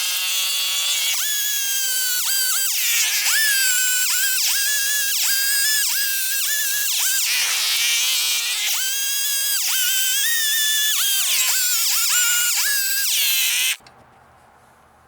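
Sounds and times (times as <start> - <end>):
chainsaw cutting wood: 0.0 - 13.8.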